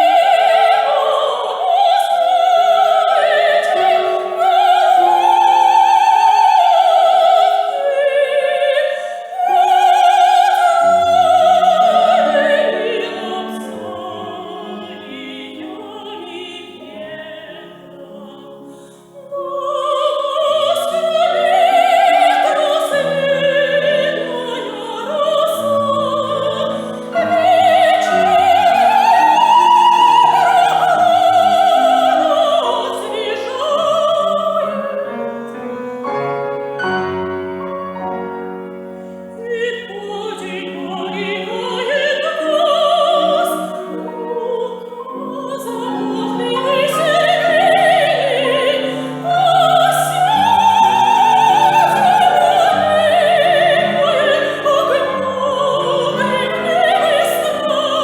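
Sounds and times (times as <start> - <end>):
operatic soprano singing: 0.0 - 58.0
piano: 0.0 - 58.0.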